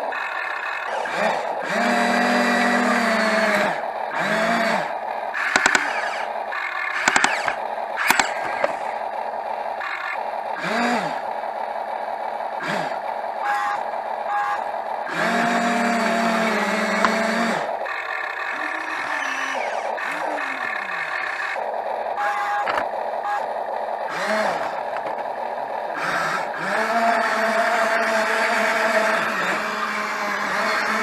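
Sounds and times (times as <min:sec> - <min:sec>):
excavator engine whining: 0:00.0 - 0:31.0.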